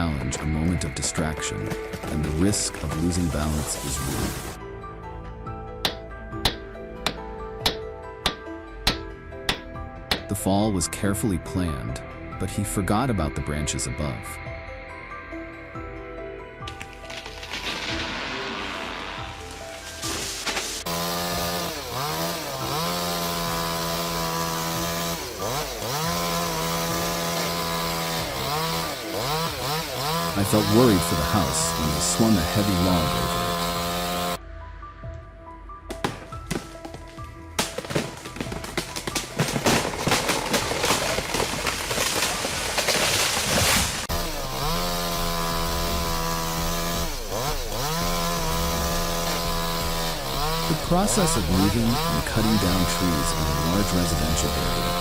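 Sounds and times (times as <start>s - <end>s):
sharp cracks and crashing: 1.4s - 4.6s, 16.7s - 33.0s, 35.9s - 54.7s
chainsaw revving: 1.6s - 4.6s, 19.5s - 34.4s, 37.6s - 55.0s.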